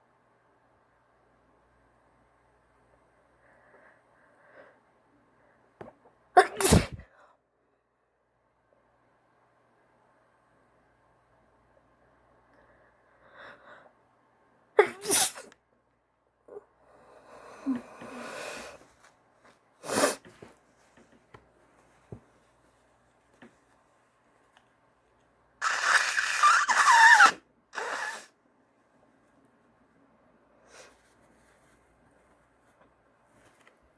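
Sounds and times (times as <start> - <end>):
woman sneezing: 6.4 - 7.0.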